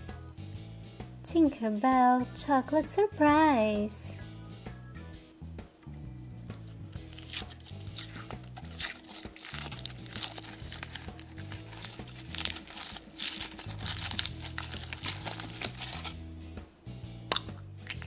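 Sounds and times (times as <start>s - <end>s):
background music: 0.0s - 18.0s
foil wrapper crinkling: 6.6s - 16.2s.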